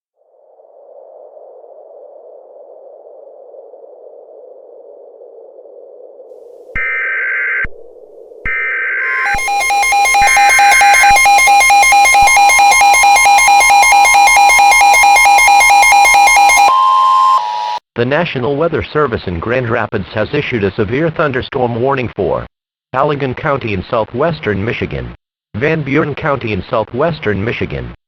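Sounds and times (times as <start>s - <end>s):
pulsing alert tone: 9.0s - 17.8s
screechy digital data bursts: 9.0s - 17.8s.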